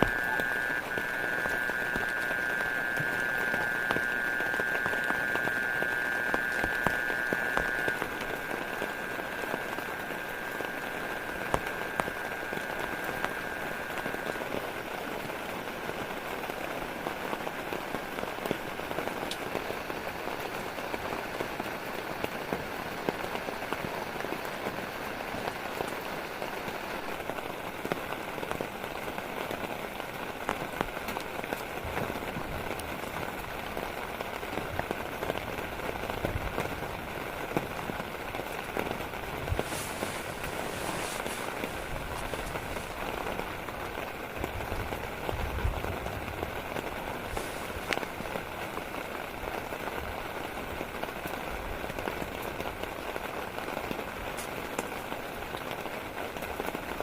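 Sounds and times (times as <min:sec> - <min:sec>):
steady high tone: 0:00.0 - 0:16.4, 0:39.3 - 0:43.6
rain drops falling: 0:00.0 - 0:57.0.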